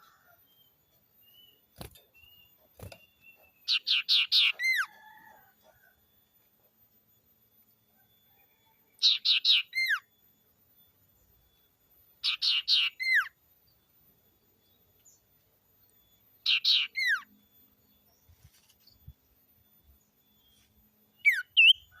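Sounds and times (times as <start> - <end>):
bird singing whistled phrases: 21.2 - 22.0.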